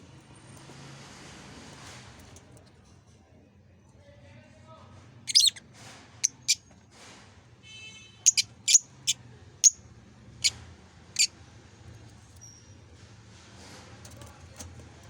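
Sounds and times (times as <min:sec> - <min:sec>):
lovebird high chirps: 0:05.3 - 0:05.6, 0:08.3 - 0:08.9.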